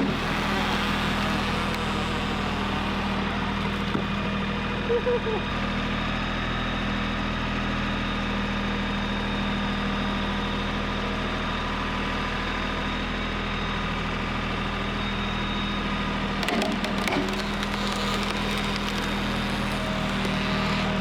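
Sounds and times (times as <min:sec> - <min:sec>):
cracking and knocking: 0:16.4 - 0:21.0.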